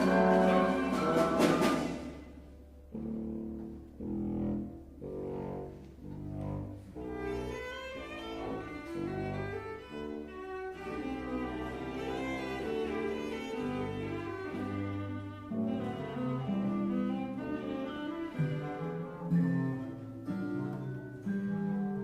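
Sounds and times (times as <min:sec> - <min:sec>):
higher instruments: 0:00.0 - 0:05.0
low bowed strings: 0:00.0 - 0:22.0.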